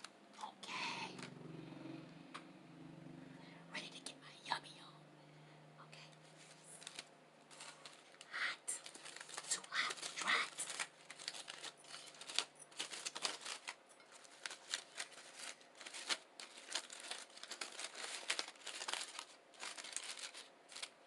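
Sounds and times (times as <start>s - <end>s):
wrapper crinkling and rustling: 6.2s - 21.0s.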